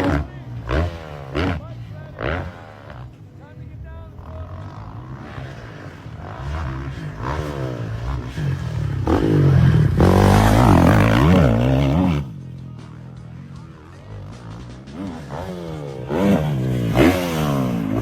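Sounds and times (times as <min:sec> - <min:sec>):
dirt bike engine revving: 0:00.0 - 0:18.0.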